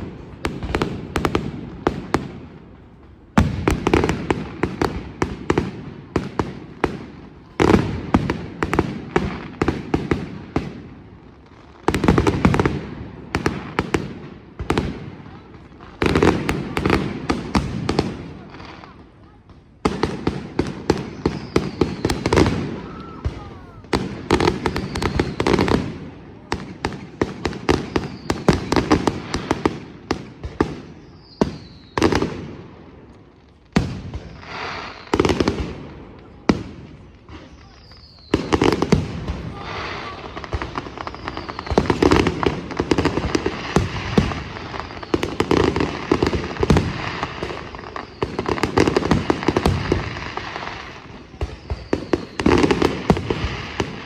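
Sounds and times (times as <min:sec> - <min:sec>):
fireworks bangs and crackling: 0:00.0 - 0:54.0
falling firework whistles: 0:21.0 - 0:23.8, 0:24.4 - 0:25.8, 0:27.7 - 0:28.9, 0:30.8 - 0:32.2, 0:34.0 - 0:35.5, 0:37.3 - 0:54.0.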